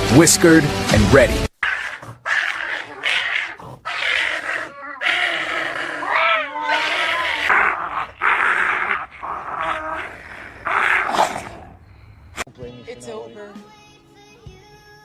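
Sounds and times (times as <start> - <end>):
cats yowling: 1.6 - 11.6.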